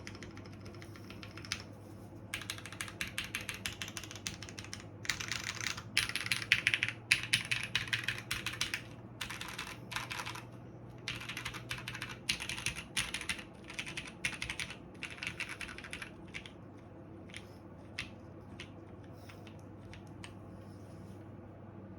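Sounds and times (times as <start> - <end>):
mechanical keyboard typing: 0.0 - 1.7, 2.3 - 16.6.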